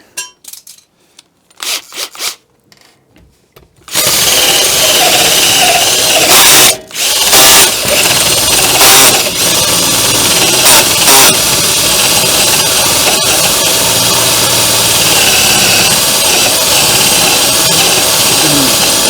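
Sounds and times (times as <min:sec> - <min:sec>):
drill hole saw grinding steel: 0:03.9 - 0:19.0.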